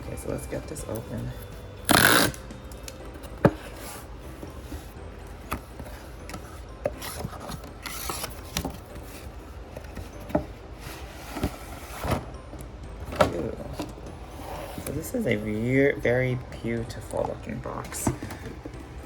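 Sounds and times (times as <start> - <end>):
plastic wrap and cardboard rustling: 2.2 - 15.8.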